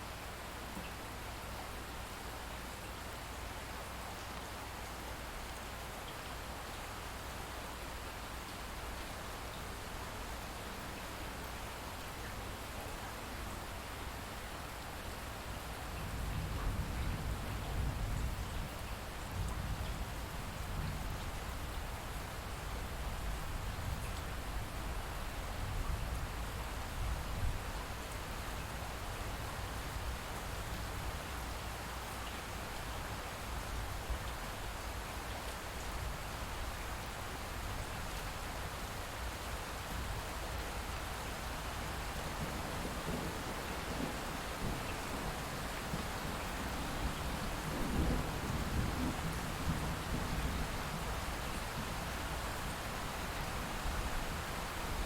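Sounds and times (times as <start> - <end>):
light rain falling: 0.0 - 55.0
distant thunder rumble: 42.4 - 51.0.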